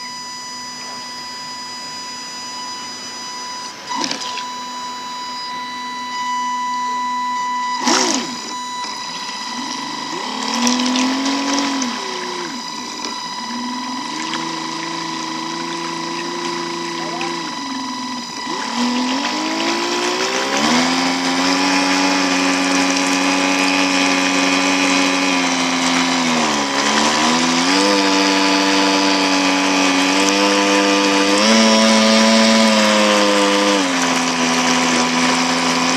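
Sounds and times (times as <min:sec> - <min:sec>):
electric motor whining: 0:00.0 - 0:35.9
water noise: 0:07.7 - 0:35.9.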